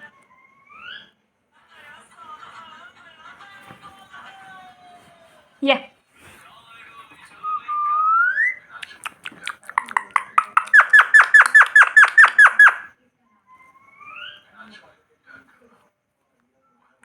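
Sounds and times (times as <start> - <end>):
parrot whistling and calling: 0.3 - 1.2, 7.4 - 12.9, 13.6 - 14.5.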